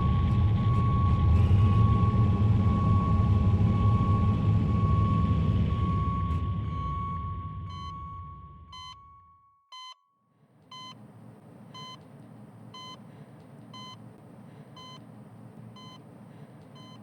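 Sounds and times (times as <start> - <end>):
low rumble with high tone: 0.0 - 9.4
heart monitor beeping: 0.0 - 10.0, 10.7 - 11.1, 11.7 - 12.1, 12.7 - 14.1, 14.7 - 15.1, 15.7 - 17.0.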